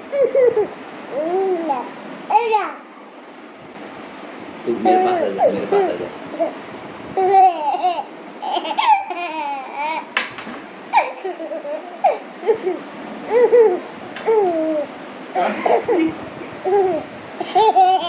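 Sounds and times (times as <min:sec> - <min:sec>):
baby laughing and babbling: 0:00.0 - 0:02.9, 0:04.7 - 0:06.6, 0:07.2 - 0:10.2, 0:10.9 - 0:18.0.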